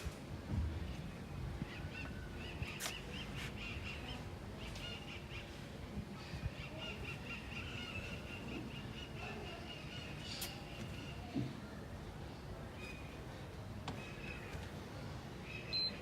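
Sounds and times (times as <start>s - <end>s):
bird chirping and trilling: 15.5s - 16.0s.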